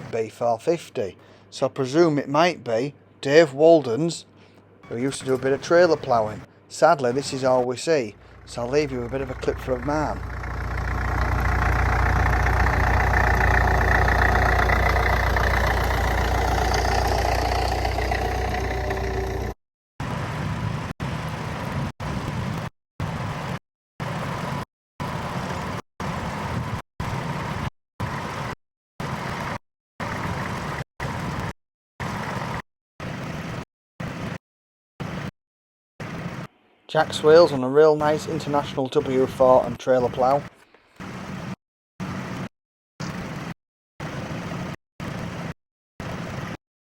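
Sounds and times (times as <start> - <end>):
tractor engine rumbling: 7.3 - 19.6.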